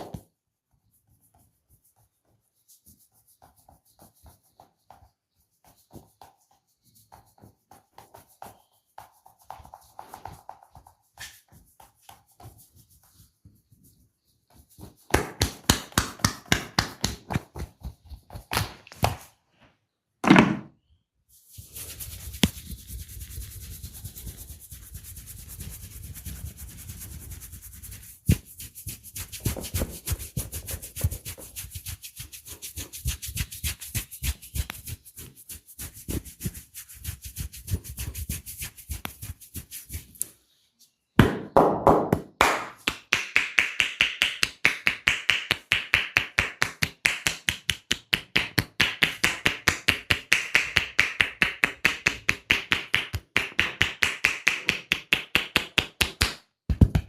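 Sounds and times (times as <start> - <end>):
hands rubbing head: 0.1 - 19.3, 21.3 - 40.4, 42.4 - 57.0
hands tapping on head: 14.8 - 19.3, 41.2 - 57.0.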